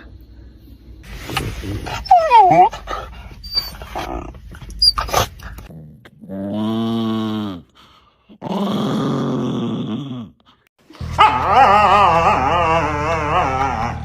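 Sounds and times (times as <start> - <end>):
steady low hum: 0.0 - 5.7
dog howling: 11.0 - 14.0.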